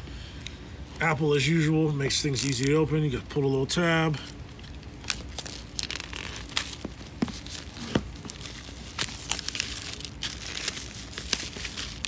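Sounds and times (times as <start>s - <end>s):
small clicks and crinkles: 4.2s - 12.0s
paper and cardboard rustling: 5.1s - 12.0s.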